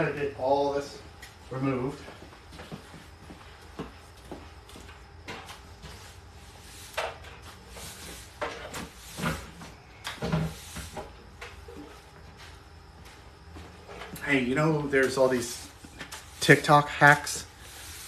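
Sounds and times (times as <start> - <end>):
objects knocking and clunking: 4.8 - 6.0, 8.3 - 12.2.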